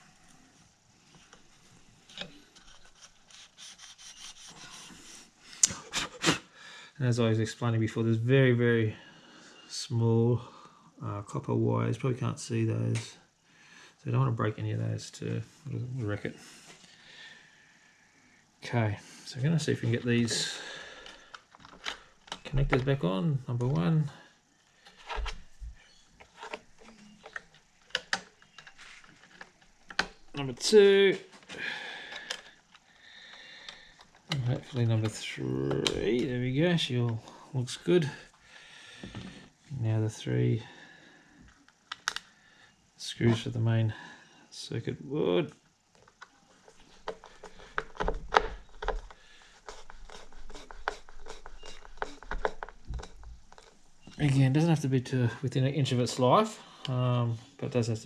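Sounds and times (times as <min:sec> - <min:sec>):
plastic connectors clicking: 0:41.9 - 0:42.3
screwdriver clicks and scrapes: 0:49.7 - 0:53.8.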